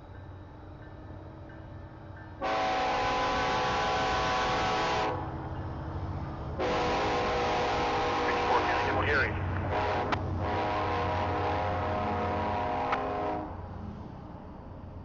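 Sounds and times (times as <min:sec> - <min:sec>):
low rumble of train: 0:00.0 - 0:15.0
locomotive horn blowing: 0:02.4 - 0:05.2, 0:06.6 - 0:09.0, 0:09.6 - 0:13.6.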